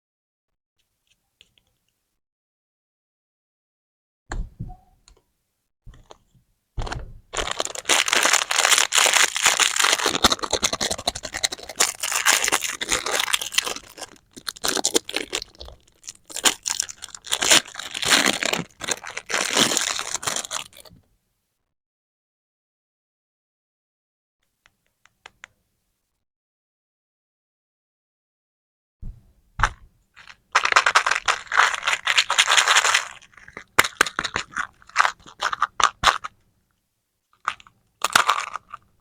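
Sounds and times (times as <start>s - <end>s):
wrapper crinkling and tearing: 7.3s - 21.0s, 29.7s - 36.3s, 37.4s - 38.9s.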